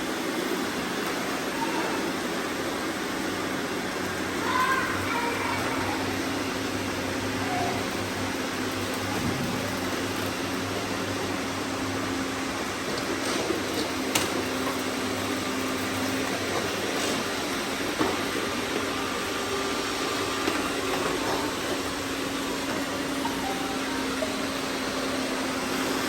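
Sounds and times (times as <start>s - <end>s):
robot vacuum whirring: 12.2s - 26.0s.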